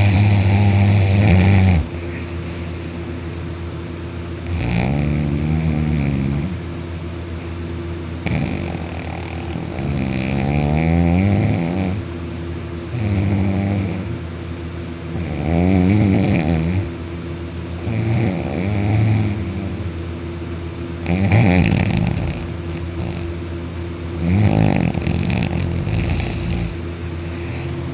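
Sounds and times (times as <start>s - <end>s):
man snoring loudly: 0.0s - 2.4s, 4.4s - 6.6s, 8.2s - 12.0s, 12.9s - 14.2s, 15.1s - 16.9s, 17.8s - 20.0s, 21.0s - 23.4s, 24.2s - 27.6s
steady low hum: 0.0s - 27.9s.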